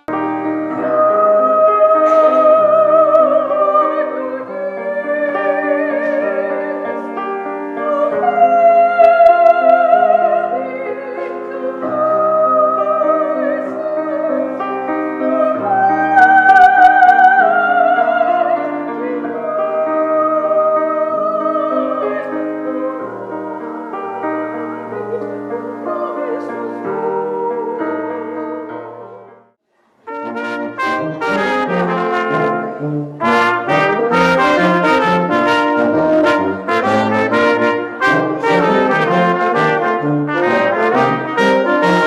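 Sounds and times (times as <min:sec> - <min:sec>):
piano chords: 0:00.0 - 0:42.0
singing voice long held notes: 0:00.7 - 0:07.1.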